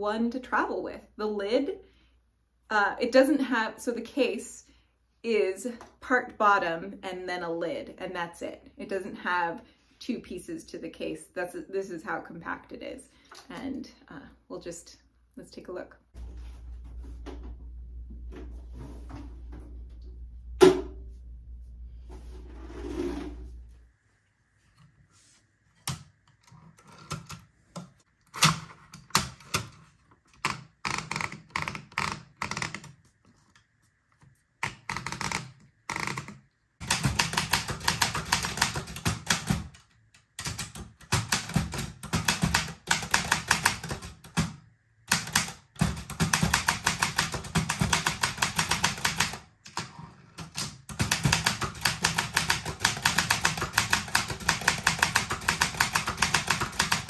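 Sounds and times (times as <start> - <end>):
typewriter keystrokes: 34.6 - 39.8, 45.1 - 49.8, 50.4 - 57.0.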